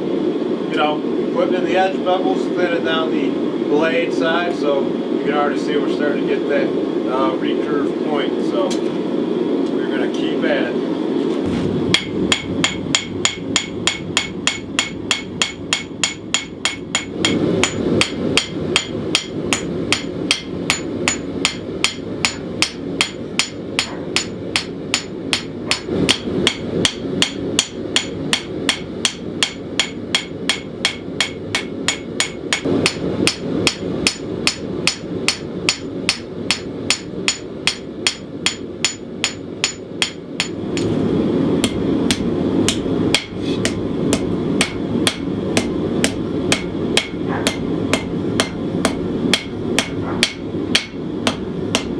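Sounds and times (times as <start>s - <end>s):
hammer striking steel on anvil: 11.9s - 41.0s, 41.6s - 51.9s
anvil ringing: 41.6s - 51.9s.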